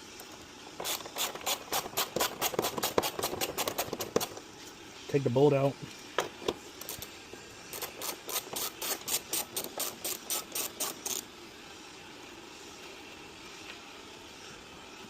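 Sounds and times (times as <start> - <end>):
ratchet wrench clicking: 0.8 - 4.4, 7.7 - 11.2.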